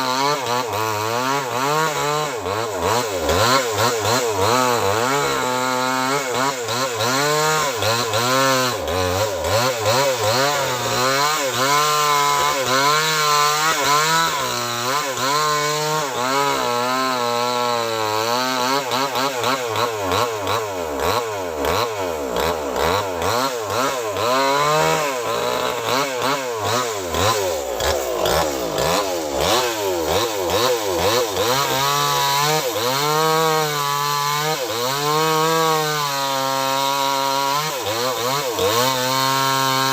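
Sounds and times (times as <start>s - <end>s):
chainsaw cutting wood: 0.0s - 39.9s.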